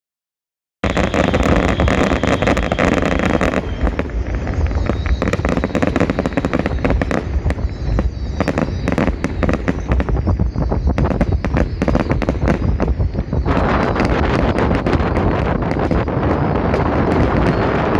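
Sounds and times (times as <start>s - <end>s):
fireworks bangs and crackles: 0.8s - 17.9s.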